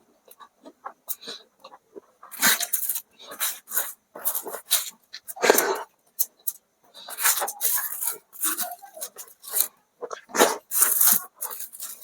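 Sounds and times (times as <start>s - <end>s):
person chewing and mouth-smacking: 0.2s - 6.4s.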